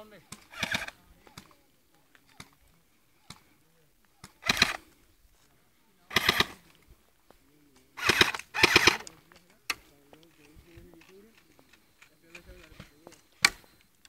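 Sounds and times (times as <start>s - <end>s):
airsoft gun full-auto bursts: 0.2s - 1.4s, 4.2s - 4.9s, 6.1s - 6.6s, 8.0s - 9.1s.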